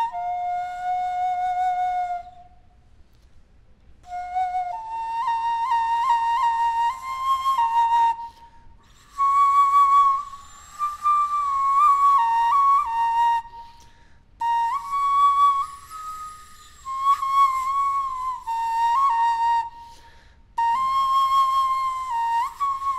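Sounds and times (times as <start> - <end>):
flute playing high tone: 0.0 - 2.6, 4.1 - 13.8, 20.6 - 22.9.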